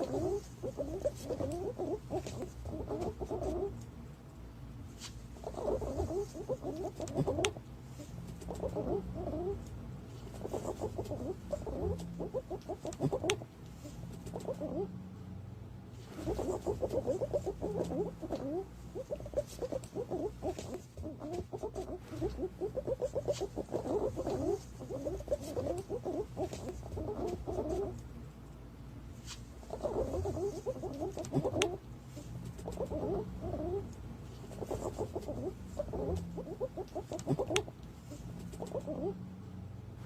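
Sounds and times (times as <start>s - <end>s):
pigeon calls: 0.0s - 3.8s, 5.4s - 9.6s, 10.3s - 13.5s, 14.2s - 14.9s, 16.1s - 28.0s, 29.6s - 33.9s, 34.5s - 37.8s, 38.5s - 39.2s
steady low hum: 0.0s - 40.0s.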